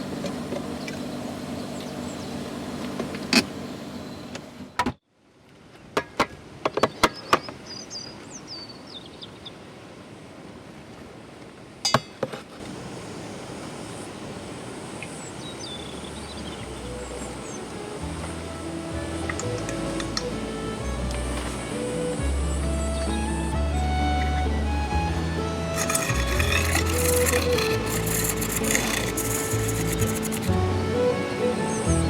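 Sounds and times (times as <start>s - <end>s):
outdoor background noise: 0.0s - 32.0s
faint high chirping calls: 14.9s - 20.8s.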